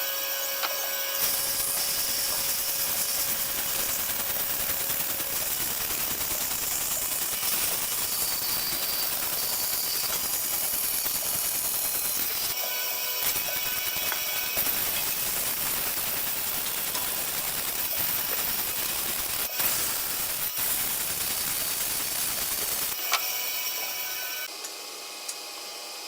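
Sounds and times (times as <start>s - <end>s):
woodworking power tool hissing: 0.0s - 26.0s.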